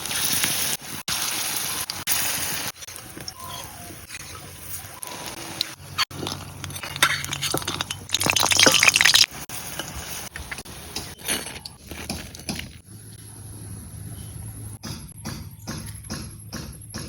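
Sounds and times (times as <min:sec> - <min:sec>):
utensils clinking: 0:05.6 - 0:12.8.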